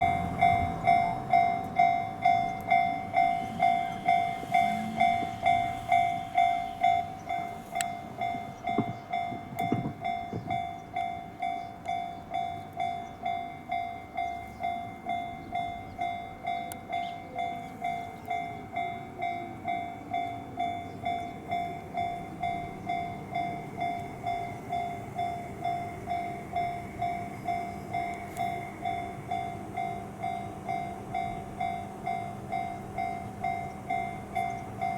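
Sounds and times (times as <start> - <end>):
level crossing warning bell: 0.0 - 34.9
knocks: 8.7 - 10.6.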